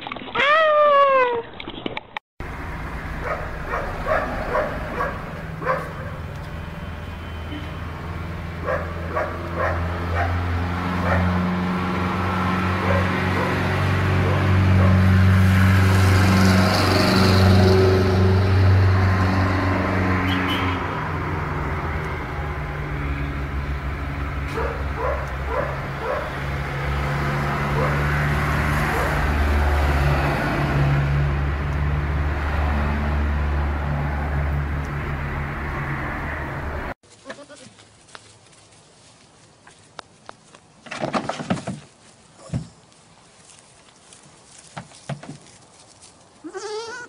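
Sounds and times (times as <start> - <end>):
dog barking: 3.2 - 6.2, 8.6 - 10.4, 11.0 - 11.4, 12.8 - 13.6, 14.2 - 15.0, 24.5 - 26.4, 27.7 - 28.0.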